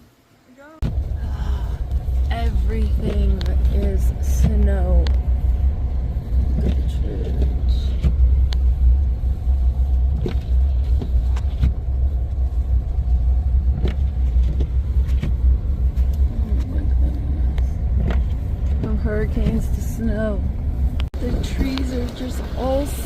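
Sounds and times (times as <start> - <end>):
vehicle driving rumble: 0.8 - 23.0.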